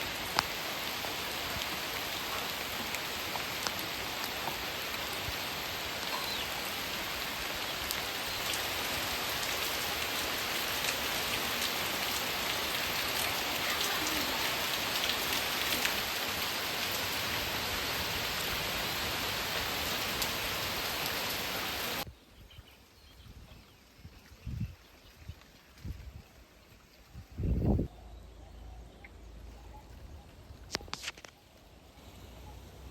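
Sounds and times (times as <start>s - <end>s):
steady rain falling: 0.0s - 22.1s.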